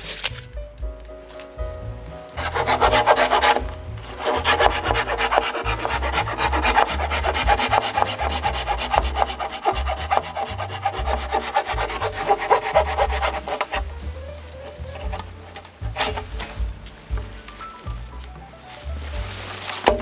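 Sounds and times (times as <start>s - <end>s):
background music: 0.0s - 20.0s
tool scraping along wood: 2.4s - 13.9s.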